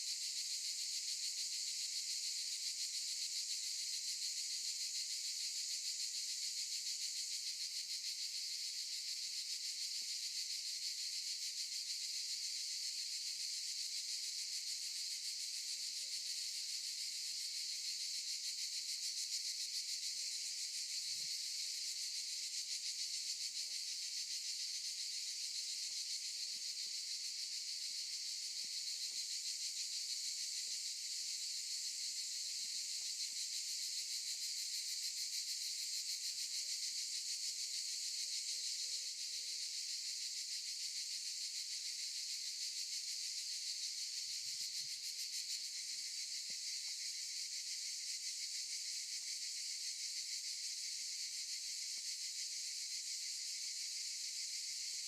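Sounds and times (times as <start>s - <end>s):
cicadas buzzing: 17.0s - 55.0s.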